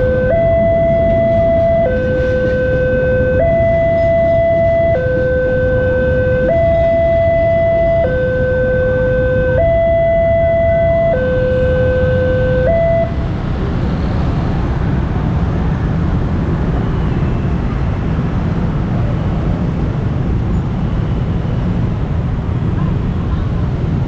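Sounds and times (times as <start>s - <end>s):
level crossing warning siren: 0.0s - 13.4s.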